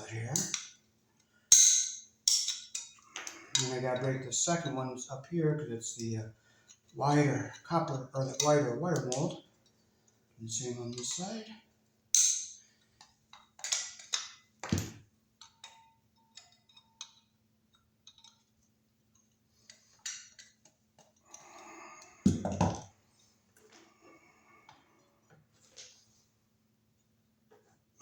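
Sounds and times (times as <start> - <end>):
hand tools clicking on metal box: 0.3 - 0.6
heavy thumps: 22.3 - 22.8.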